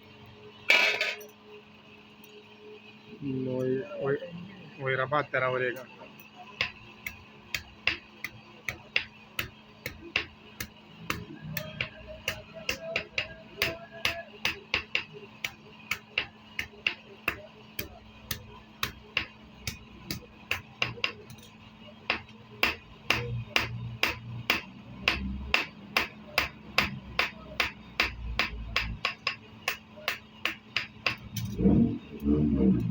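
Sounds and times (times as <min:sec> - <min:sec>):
hammer striking metal on anvil: 0:06.5 - 0:21.5, 0:22.1 - 0:31.6.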